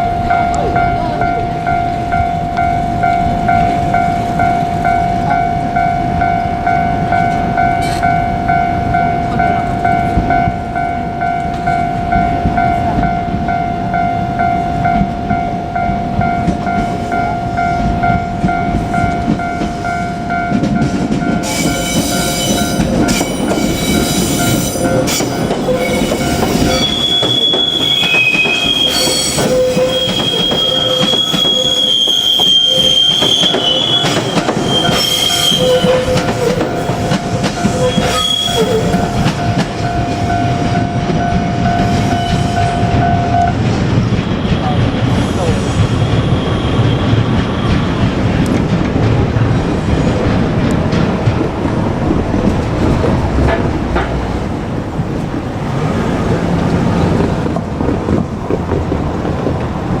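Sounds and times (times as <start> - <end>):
level crossing warning bell: 0.0 - 58.2
electric train rumble: 0.0 - 60.0
train wheels clicking: 14.4 - 60.0
high-pitched wheel squeal: 21.4 - 39.6.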